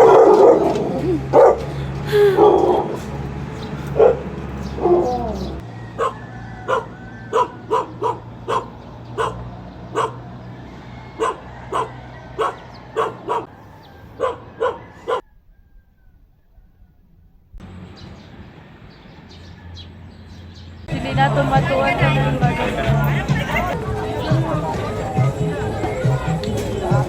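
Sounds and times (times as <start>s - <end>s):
dog barking: 0.0s - 1.7s, 2.3s - 3.1s, 3.9s - 10.4s, 11.1s - 13.5s, 14.1s - 15.2s.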